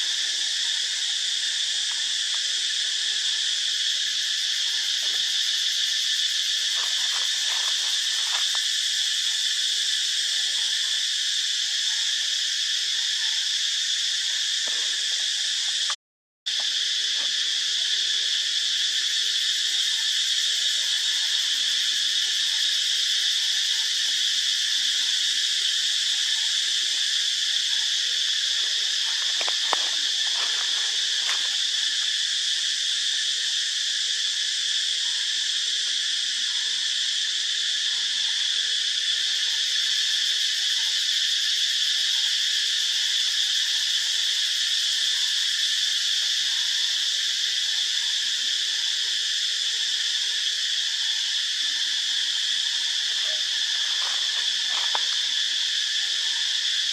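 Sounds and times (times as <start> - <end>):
high-pitched insect buzz: 3.5 - 10.2, 18.3 - 33.6, 49.2 - 56.9.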